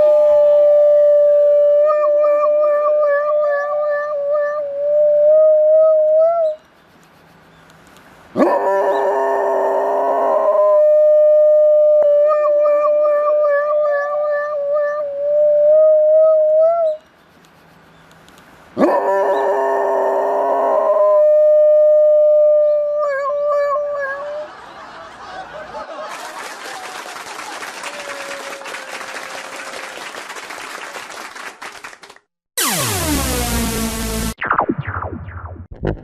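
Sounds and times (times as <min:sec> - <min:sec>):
dog howling: 0:00.0 - 0:06.6, 0:08.4 - 0:17.0, 0:18.8 - 0:24.5
police siren: 0:32.6 - 0:34.4.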